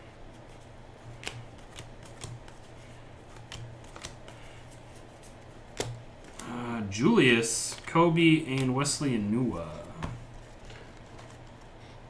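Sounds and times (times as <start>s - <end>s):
faint low hum: 0.0s - 12.0s
cards flicking: 0.6s - 6.6s, 7.6s - 11.7s.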